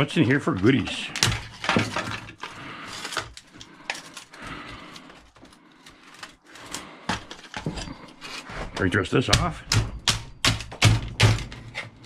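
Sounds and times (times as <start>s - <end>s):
plastic and metal parts knocking: 0.8s - 4.2s, 8.7s - 12.0s.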